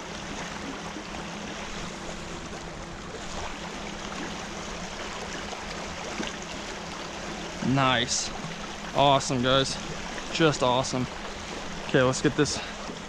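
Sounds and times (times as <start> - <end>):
water rushing over rocks: 7.6 - 12.8.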